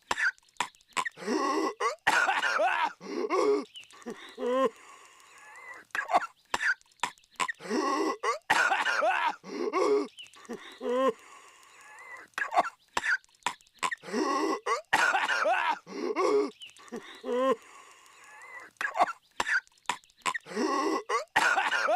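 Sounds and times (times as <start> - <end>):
cartoon character coughing: 1.0 - 3.7, 6.0 - 6.8, 7.4 - 10.1, 12.4 - 13.2, 13.8 - 16.5, 18.8 - 19.6, 20.3 - 21.9.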